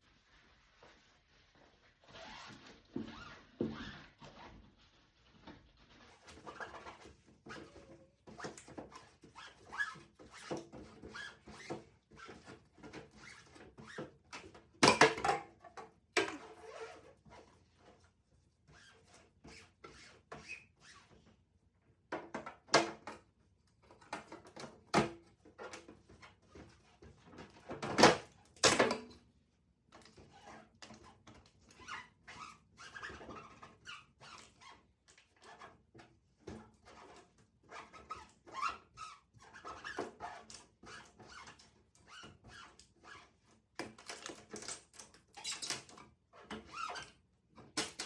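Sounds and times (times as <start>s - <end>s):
surfaces being wiped: 0.0s - 6.6s
plastic shelves clicking and squeaking: 2.0s - 18.0s, 30.0s - 48.0s.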